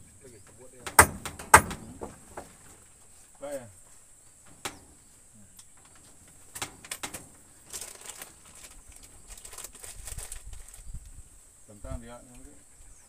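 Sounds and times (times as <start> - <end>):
sharp knocks and taps: 0.8 - 2.7.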